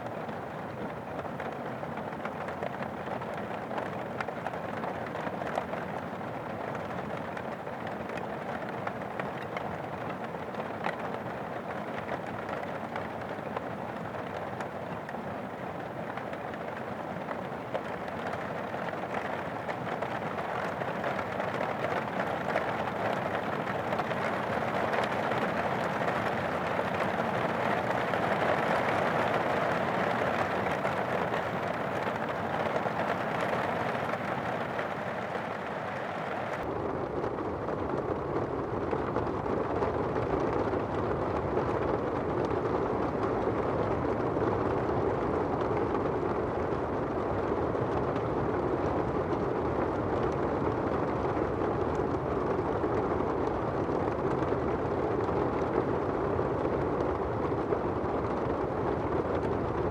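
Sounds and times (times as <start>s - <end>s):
steady rain hiss: 0.0s - 36.6s.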